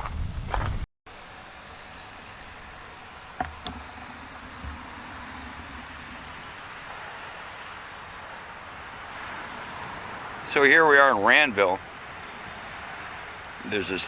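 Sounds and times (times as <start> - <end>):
car road noise: 2.5 - 10.4
sharp clicks: 3.3 - 6.5.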